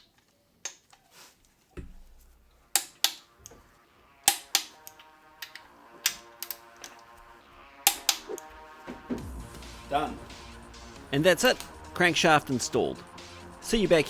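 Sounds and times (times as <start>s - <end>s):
music: 2.3s - 14.0s.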